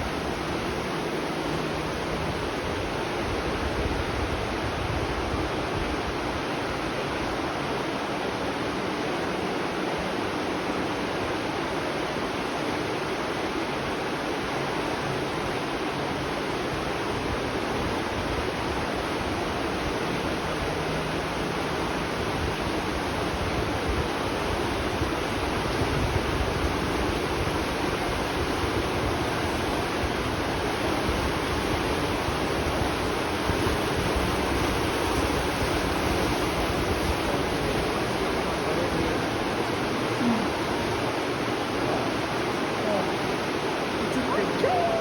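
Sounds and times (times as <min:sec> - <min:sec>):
spring water flowing: 0:16.4 - 0:45.0.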